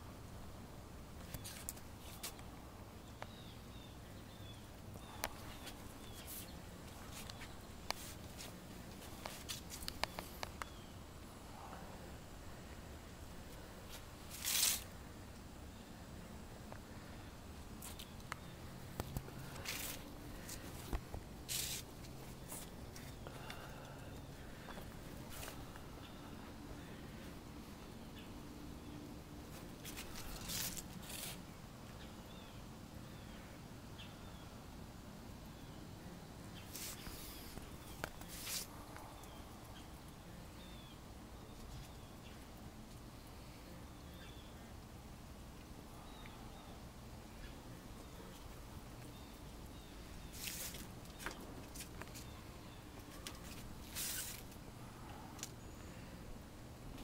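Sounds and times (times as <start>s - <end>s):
low outdoor background: 0.0s - 57.0s
low steady hum: 0.0s - 57.0s
brief rustles: 13.9s - 14.9s, 53.0s - 54.6s
brief rustling: 13.9s - 14.9s, 19.0s - 23.2s, 53.0s - 54.6s.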